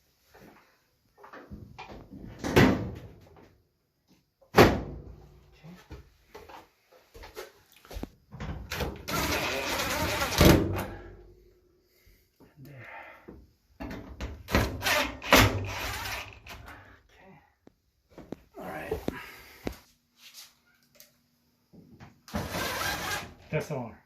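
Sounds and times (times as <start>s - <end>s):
knocks and clatter of parts: 13.8s - 16.7s.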